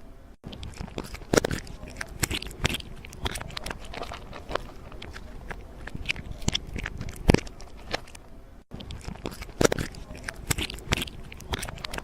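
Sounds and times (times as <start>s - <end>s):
low steady background noise: 0.0s - 12.0s
irregular crunches: 0.5s - 12.0s.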